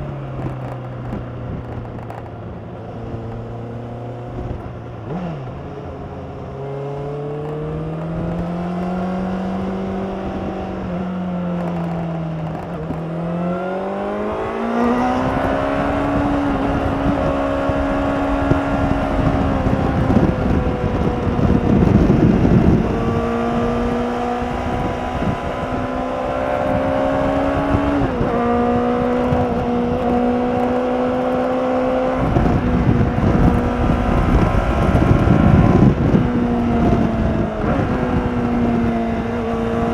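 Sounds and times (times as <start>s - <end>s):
motorcycle engine revving: 0.0s - 39.9s
wind rushing over microphone: 0.0s - 39.9s.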